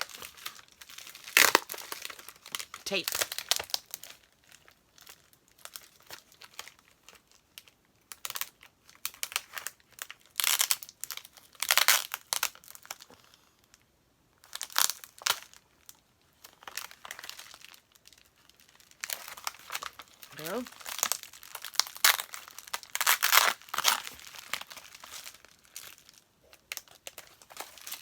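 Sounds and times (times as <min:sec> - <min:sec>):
tape and packaging tearing: 0:01.1 - 0:04.0, 0:19.4 - 0:25.4.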